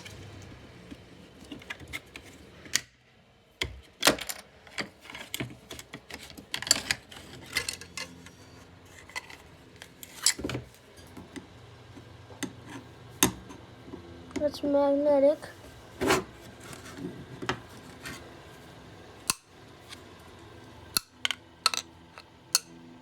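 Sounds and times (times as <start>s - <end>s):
plastic and metal parts clattering: 4.0s - 10.7s, 21.2s - 22.7s.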